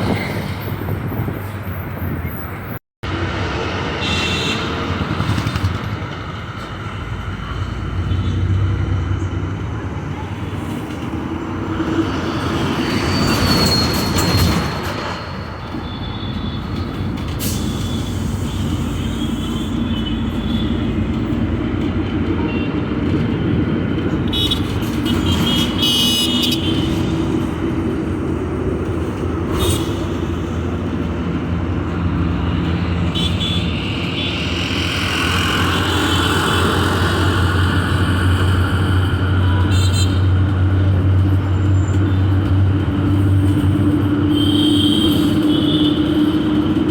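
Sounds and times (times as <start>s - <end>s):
road traffic hum: 0.0s - 46.9s
vehicle horns honking: 4.0s - 4.8s, 24.3s - 27.2s, 33.1s - 34.5s, 44.3s - 46.6s.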